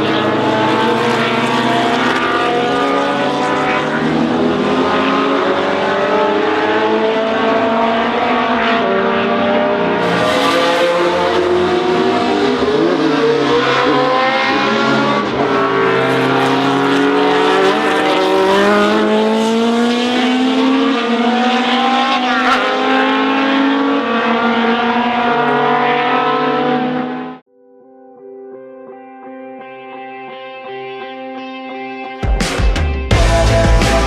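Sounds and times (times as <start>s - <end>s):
race car engines accelerating: 0.0s - 27.4s.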